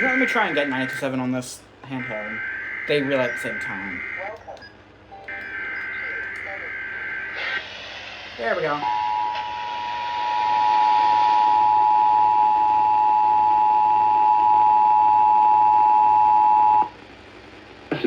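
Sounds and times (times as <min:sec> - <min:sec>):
radio static hiss: 0:00.0 - 0:04.6, 0:05.5 - 0:11.6, 0:17.1 - 0:18.0.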